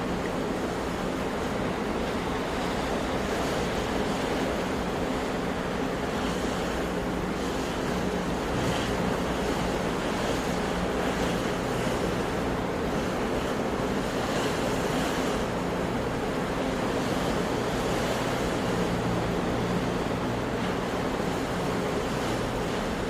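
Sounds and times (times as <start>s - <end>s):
sea waves washing on shore: 0.0s - 23.0s.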